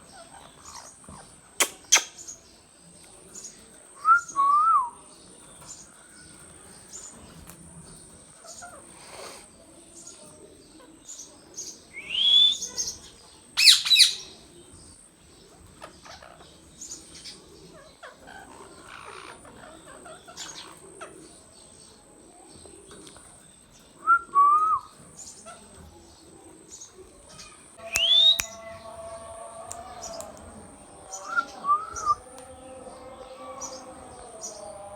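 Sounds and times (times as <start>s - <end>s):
parakeet rising whistle: 27.8s - 28.7s
parakeet two-note call: 27.8s - 28.8s.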